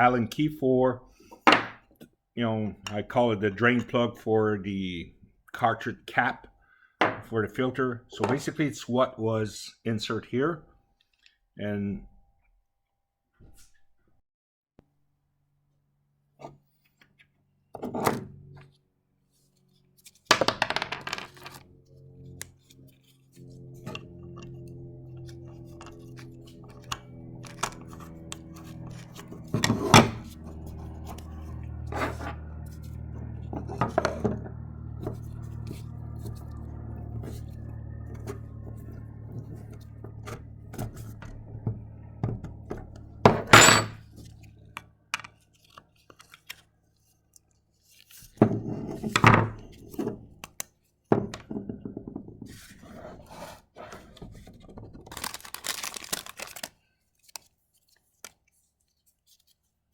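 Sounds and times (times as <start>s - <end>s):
steady low hum: 21.6s - 44.9s.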